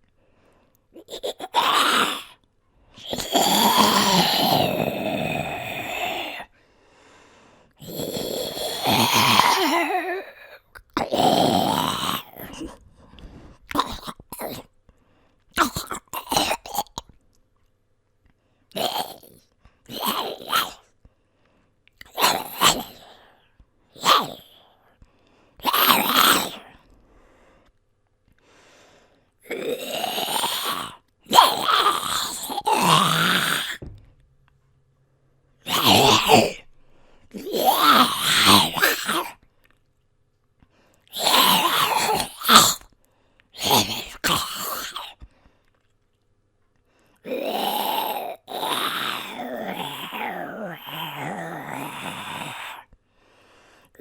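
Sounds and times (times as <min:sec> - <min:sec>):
person growling like a zombie: 0:01.0 - 0:02.4, 0:03.0 - 0:06.5, 0:07.8 - 0:12.8, 0:13.7 - 0:14.6, 0:15.6 - 0:17.0, 0:18.8 - 0:20.8, 0:22.0 - 0:23.3, 0:24.0 - 0:24.6, 0:25.6 - 0:26.8, 0:29.4 - 0:34.0, 0:35.6 - 0:39.4, 0:41.1 - 0:42.9, 0:43.6 - 0:45.2, 0:47.2 - 0:52.9.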